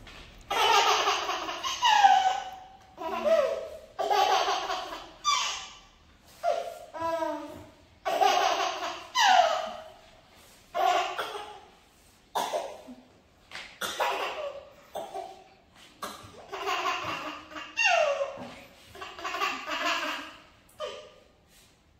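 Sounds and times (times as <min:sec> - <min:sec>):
baby laughing: 0:00.5 - 0:05.8, 0:08.0 - 0:10.0, 0:10.7 - 0:11.6, 0:13.8 - 0:21.2
baby squealing: 0:01.5 - 0:03.7, 0:05.2 - 0:07.1, 0:09.0 - 0:10.0, 0:17.5 - 0:18.4
baby coughing: 0:10.8 - 0:11.7, 0:12.3 - 0:13.0, 0:13.8 - 0:16.6.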